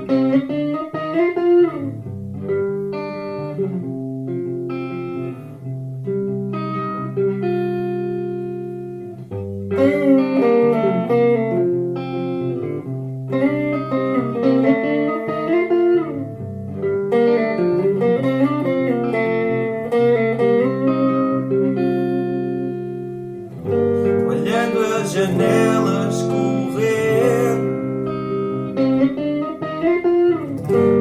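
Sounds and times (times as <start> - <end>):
fingerstyle guitar: 0.0 - 31.0.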